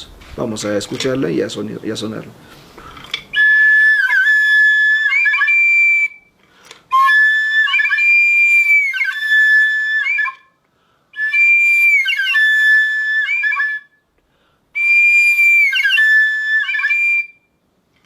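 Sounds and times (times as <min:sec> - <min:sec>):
flute playing high notes: 0:03.3 - 0:14.0, 0:14.8 - 0:17.5.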